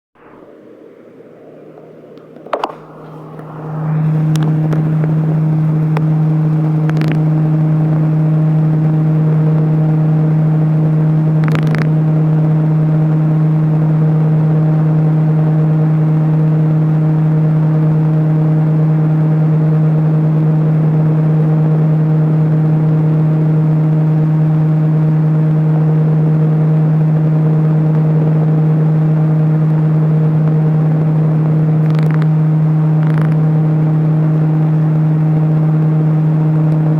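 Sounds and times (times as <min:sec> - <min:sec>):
rush of air: 0:00.2 - 0:08.7
electric fan motor humming: 0:00.2 - 0:36.9
fan switch click: 0:02.2 - 0:07.8.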